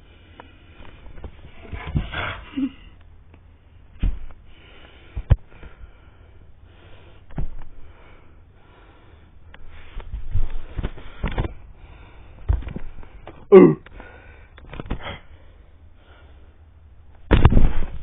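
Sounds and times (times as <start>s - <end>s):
soft bumps: 0.9s - 2.7s, 3.3s - 5.8s, 7.2s - 8.0s, 9.5s - 11.7s.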